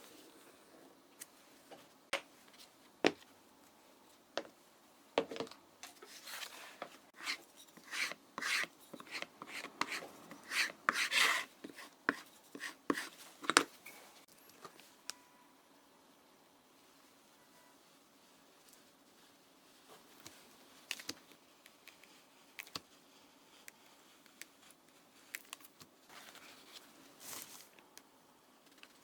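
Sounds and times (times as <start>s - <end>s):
scraping and rubbing on leather: 6.2s - 13.7s.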